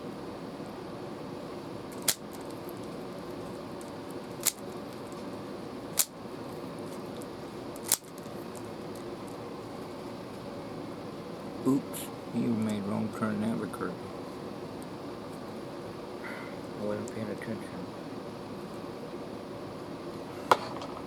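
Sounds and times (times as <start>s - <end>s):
steady background hum: 0.0s - 21.0s
sharp plastic clicks: 2.0s - 2.6s, 3.8s - 4.6s, 7.8s - 8.3s.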